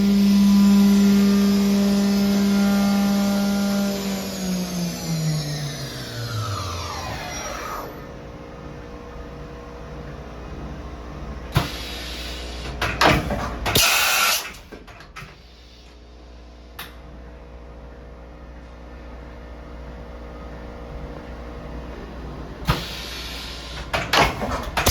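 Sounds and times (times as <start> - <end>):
spindle whine: 0.0 - 11.6
machining center humming: 0.0 - 13.0.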